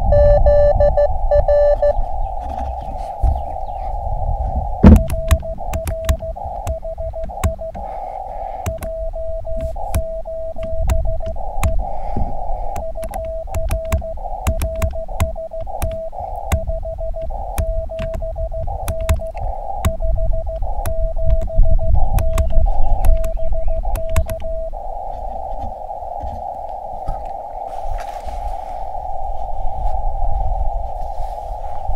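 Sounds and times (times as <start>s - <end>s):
morse code sidetone: 0.0s - 3.5s, 4.8s - 25.8s
radio band hiss: 1.6s - 31.9s
sharp clicks: 4.8s - 8.0s, 8.6s - 25.0s.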